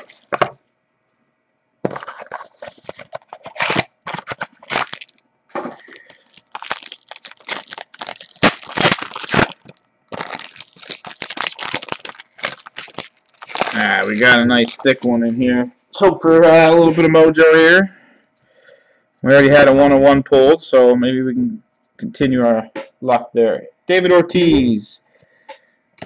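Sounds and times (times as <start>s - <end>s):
wrapper crinkling and tearing: 0.0s - 0.4s, 1.9s - 5.2s, 5.8s - 15.1s.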